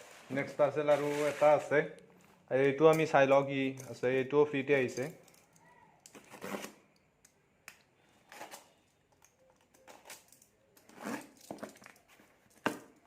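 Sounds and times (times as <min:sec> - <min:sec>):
packaging rustling and crinkling: 0:00.0 - 0:02.5.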